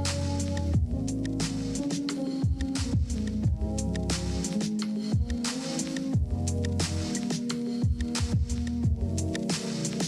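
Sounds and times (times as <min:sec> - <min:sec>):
deep kick drum: 0:00.8 - 0:01.0, 0:02.5 - 0:03.8, 0:06.2 - 0:06.4.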